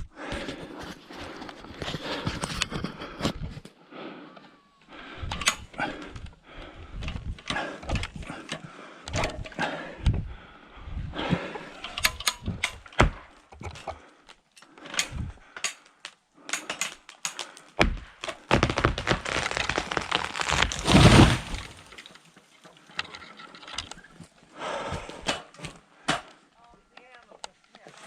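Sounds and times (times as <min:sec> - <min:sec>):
wood cracking and snapping: 0:15.0 - 0:22.4
tree crashing down: 0:18.3 - 0:22.2.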